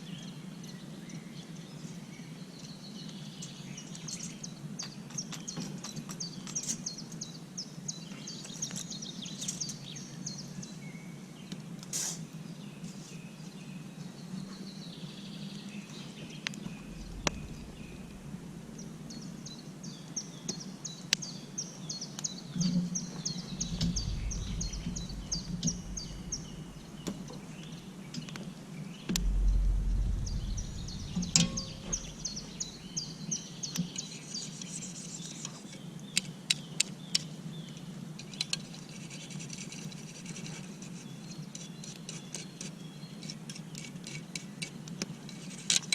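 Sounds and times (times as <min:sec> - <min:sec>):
outdoor background noise: 0:00.0 - 0:45.9
low rumbles: 0:16.5 - 0:20.2, 0:23.0 - 0:28.2, 0:29.1 - 0:33.4
birds chirping: 0:16.6 - 0:21.4, 0:23.0 - 0:28.0, 0:29.2 - 0:33.7.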